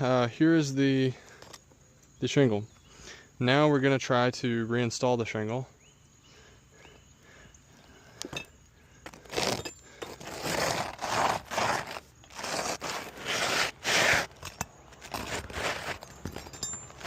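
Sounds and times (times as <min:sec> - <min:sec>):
roofing shingle scraping and rustling: 0:09.0 - 0:17.0.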